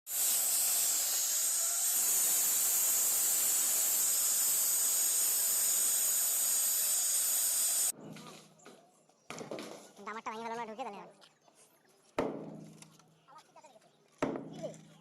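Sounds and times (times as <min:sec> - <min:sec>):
concrete saw grinding: 0:00.1 - 0:07.9.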